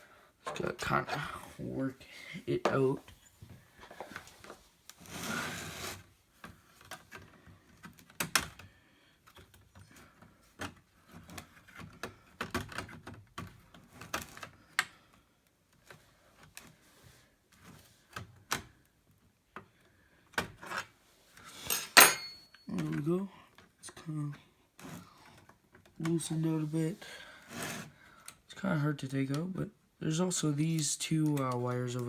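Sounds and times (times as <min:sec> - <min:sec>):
plastic scrape: 0:03.9 - 0:06.1, 0:27.4 - 0:28.0.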